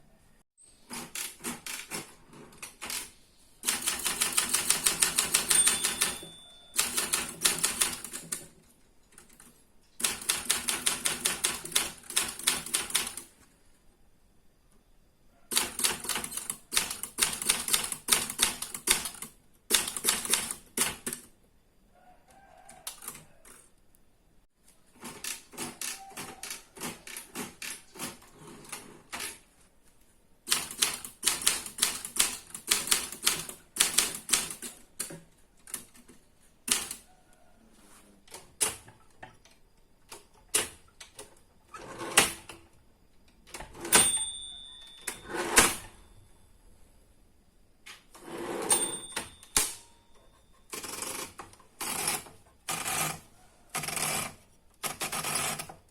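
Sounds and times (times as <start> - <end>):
typewriter key strikes: 3.7 - 8.2
typewriter carriage bell: 3.7 - 8.3, 15.5 - 18.9, 43.6 - 46.2, 48.2 - 53.1.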